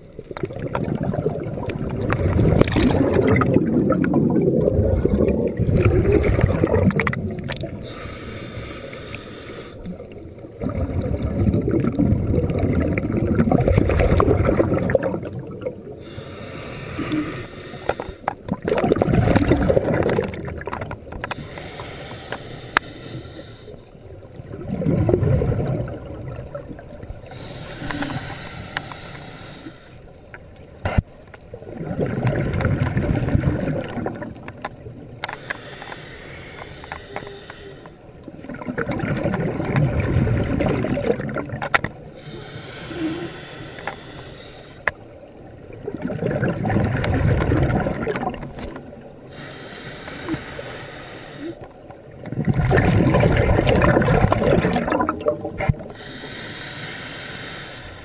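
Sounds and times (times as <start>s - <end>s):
regulator exhalation bubbling: 0.4s - 9.7s, 10.6s - 20.8s, 52.2s - 57.8s
faint clicks: 6.8s - 10.5s, 16.9s - 23.8s, 27.6s - 31.5s, 34.1s - 38.4s, 41.3s - 45.1s.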